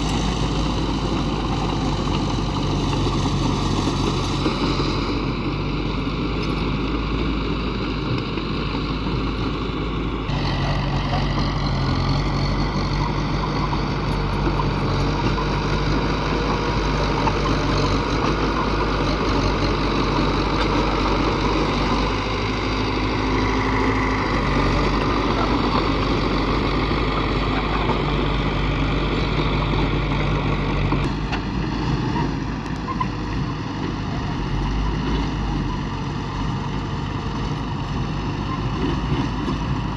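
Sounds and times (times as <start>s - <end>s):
heavy diesel engines running: 0.0s - 39.9s.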